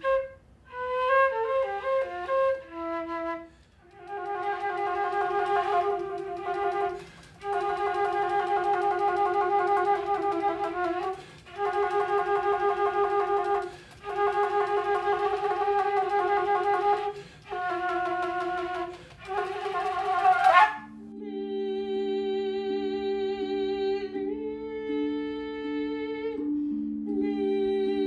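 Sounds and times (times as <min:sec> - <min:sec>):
flute playing held notes: 0:00.0 - 0:21.4.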